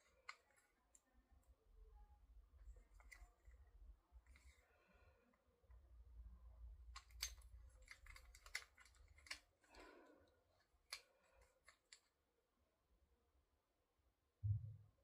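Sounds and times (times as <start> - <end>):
metallic clicks of wrench: 7.0 - 9.4.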